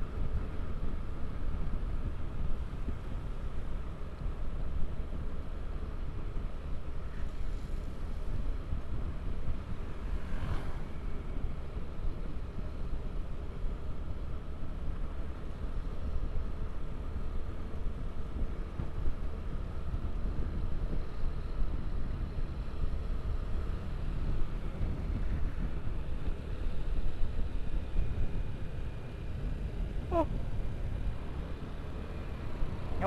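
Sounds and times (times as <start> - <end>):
road rumble: 0.0 - 33.0
wind buffeting microphone: 17.1 - 33.0.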